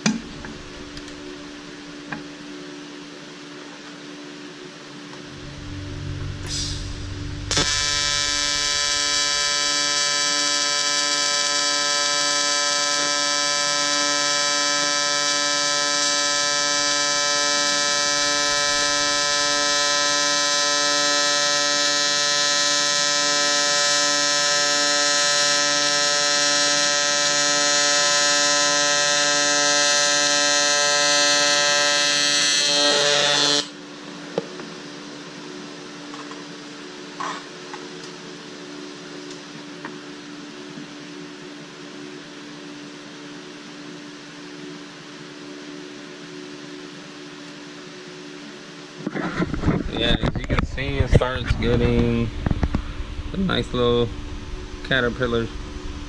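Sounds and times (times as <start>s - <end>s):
welding arc buzzing: 0.0s - 2.1s, 5.2s - 33.8s, 52.4s - 56.0s.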